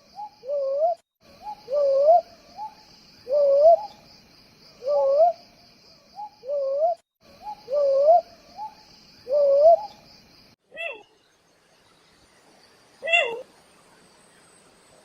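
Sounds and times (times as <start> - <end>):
crickets trilling: 0.0 - 10.6
owl hooting: 0.1 - 4.0, 4.8 - 5.4, 6.2 - 10.0, 13.0 - 13.5.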